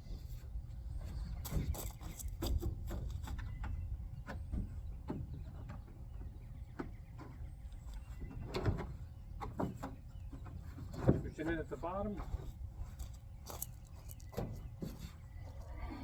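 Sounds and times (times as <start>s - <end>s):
plastic knocking and scraping: 1.5s - 13.1s.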